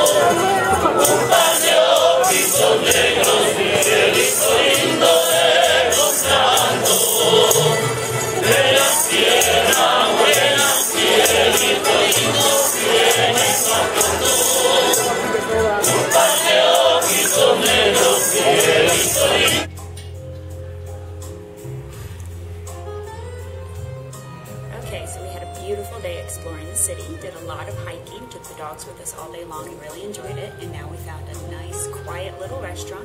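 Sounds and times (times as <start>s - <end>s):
voices singing together: 0.0s - 19.7s
shaken tambourine rhythm: 0.0s - 21.8s.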